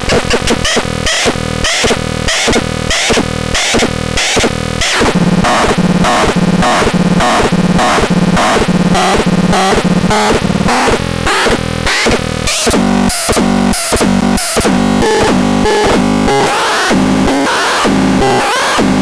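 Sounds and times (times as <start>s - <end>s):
pulsing electronic sound: 4.4s - 19.0s.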